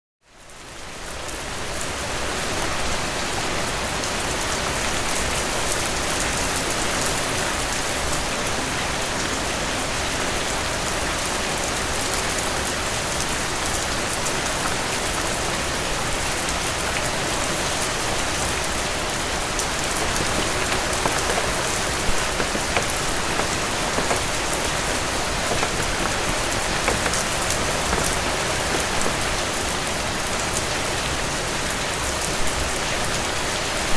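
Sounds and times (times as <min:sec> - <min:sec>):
steady rain pattering: 0:09.9 - 0:33.9
raindrops ticking: 0:19.6 - 0:29.6.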